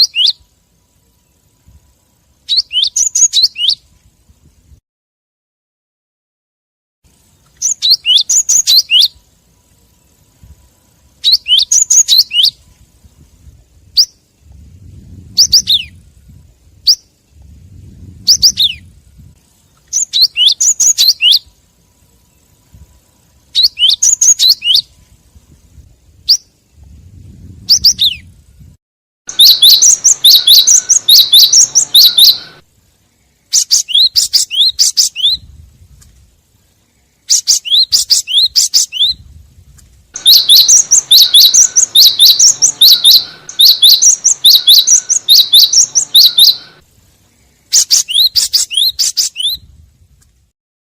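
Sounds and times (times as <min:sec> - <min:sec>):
bird chirping rapidly: 0:00.0 - 0:00.5, 0:02.4 - 0:03.9, 0:07.2 - 0:13.2, 0:13.9 - 0:14.3, 0:15.0 - 0:17.2, 0:17.8 - 0:21.6, 0:22.2 - 0:25.0, 0:26.2 - 0:26.8, 0:27.6 - 0:28.3, 0:29.3 - 0:32.6, 0:33.2 - 0:35.5, 0:37.0 - 0:39.2, 0:40.2 - 0:49.7.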